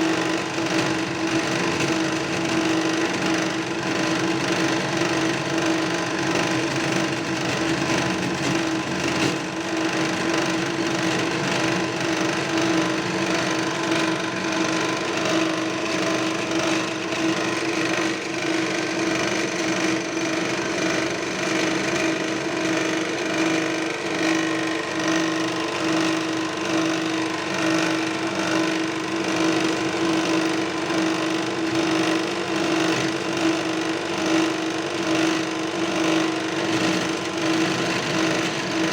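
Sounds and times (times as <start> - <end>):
power tool humming: 10.4 - 34.3.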